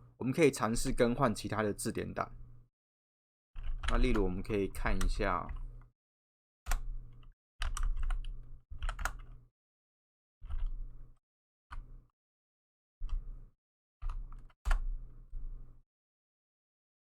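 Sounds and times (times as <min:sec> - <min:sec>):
computer keyboard typing: 0:03.6 - 0:05.7, 0:06.7 - 0:09.4, 0:10.4 - 0:10.8, 0:14.0 - 0:14.9.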